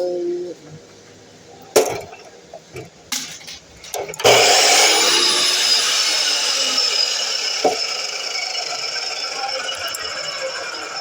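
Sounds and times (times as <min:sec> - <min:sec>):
miter saw whining: 0:04.2 - 0:11.0.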